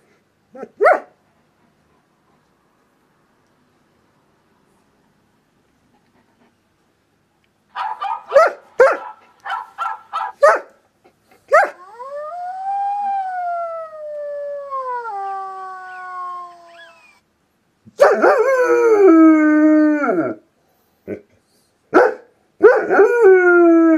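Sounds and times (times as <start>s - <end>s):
dog barking: 0.6s - 1.2s, 7.7s - 10.8s, 11.5s - 11.8s, 21.9s - 22.9s
dog howling: 11.6s - 17.2s.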